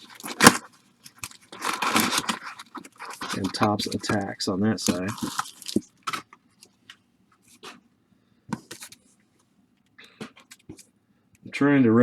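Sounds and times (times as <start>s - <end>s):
wrapper being torn open: 0.0s - 4.2s, 4.8s - 6.3s
card pack wrappers crinkling: 0.0s - 6.4s.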